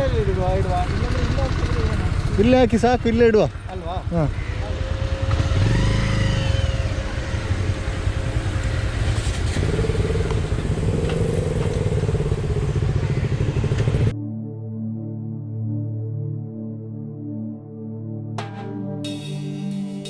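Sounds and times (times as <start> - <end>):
motorcycle engine running slowly: 0.0 - 14.1
background music: 14.1 - 20.0.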